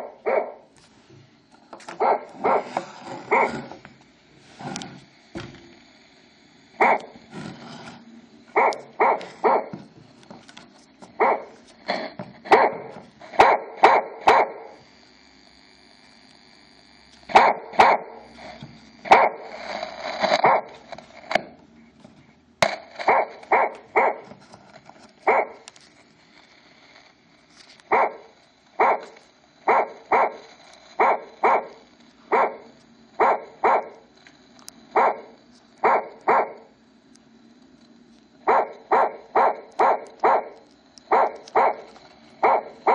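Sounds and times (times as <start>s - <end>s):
electronic alarm dog barks: 0.0s - 0.7s, 1.9s - 3.8s, 6.7s - 7.2s, 8.5s - 9.8s, 11.2s - 11.6s, 12.4s - 14.8s, 17.3s - 18.4s, 19.0s - 19.5s, 20.4s - 20.8s, 23.0s - 24.3s, 25.2s - 25.7s, 27.9s - 34.1s, 34.9s - 36.7s, 38.4s - 42.9s.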